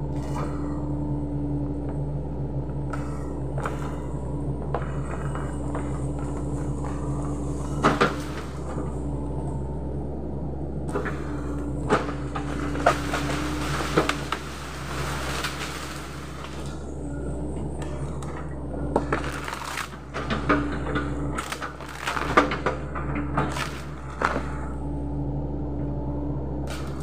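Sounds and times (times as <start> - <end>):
excavator diesel engine running: 0.0 - 27.0
wood and branches breaking: 2.9 - 9.6, 10.9 - 17.0, 17.6 - 24.7, 26.6 - 27.0
brush rustling: 12.0 - 16.9.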